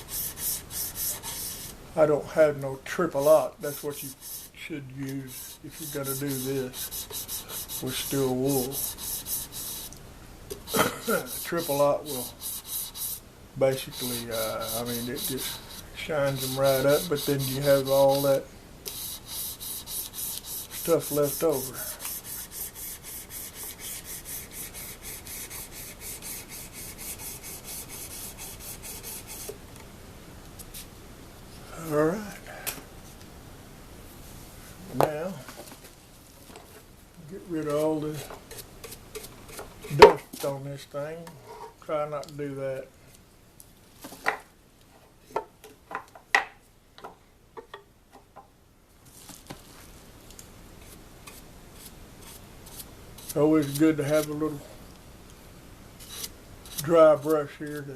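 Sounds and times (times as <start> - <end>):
sandpaper rubbing on frets: 0.0 - 1.8, 3.2 - 4.5, 5.2 - 9.9, 10.7 - 13.2, 13.8 - 29.5.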